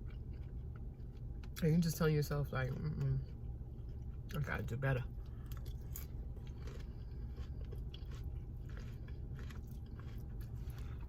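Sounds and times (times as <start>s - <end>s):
person chewing food: 0.0s - 1.7s, 5.1s - 11.0s
steady low hum: 0.0s - 11.0s.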